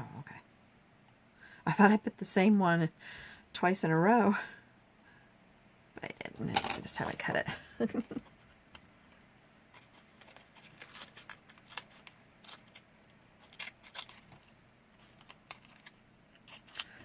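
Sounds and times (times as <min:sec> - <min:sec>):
scissors cutting paper: 0:09.8 - 0:12.8, 0:13.4 - 0:17.0.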